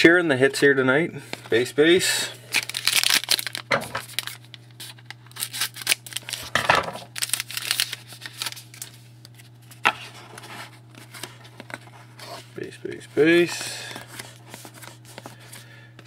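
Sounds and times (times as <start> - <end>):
trading cards sliding and rustling: 7.3 - 16.0.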